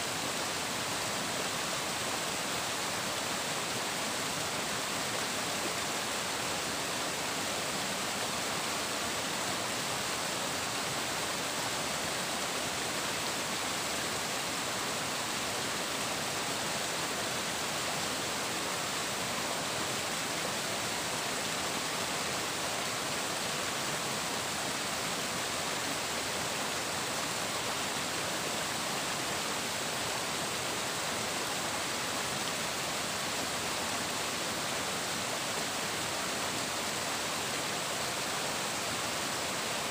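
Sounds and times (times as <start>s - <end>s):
water rushing: 0.0s - 39.9s.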